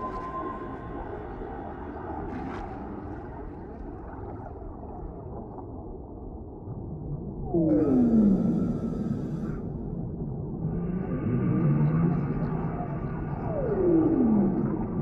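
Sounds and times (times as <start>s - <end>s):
low underwater rumble: 0.0s - 15.0s.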